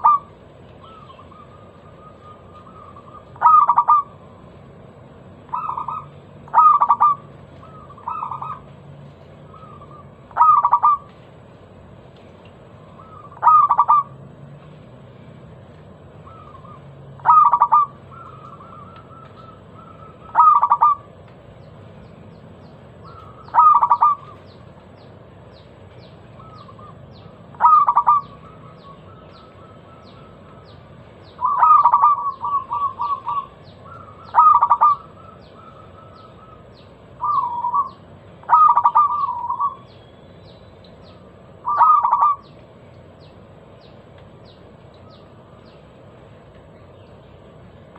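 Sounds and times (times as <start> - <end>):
dove cooing: 0.0 - 4.4, 5.5 - 8.7, 9.4 - 11.2, 12.8 - 14.2, 16.2 - 21.3, 23.0 - 24.6, 26.3 - 39.9, 41.5 - 42.6.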